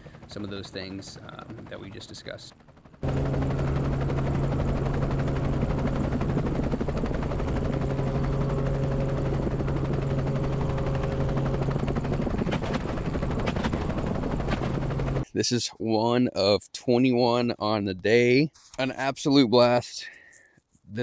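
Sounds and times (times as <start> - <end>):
helicopter rotor chop: 0.0 - 15.2
helicopter hum: 0.0 - 15.3.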